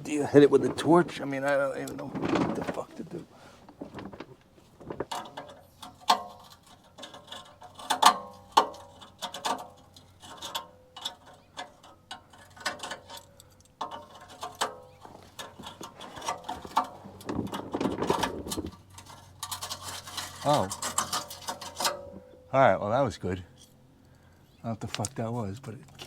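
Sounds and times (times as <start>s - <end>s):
hand tools clinking on metal pipe: 5.1s - 17.0s.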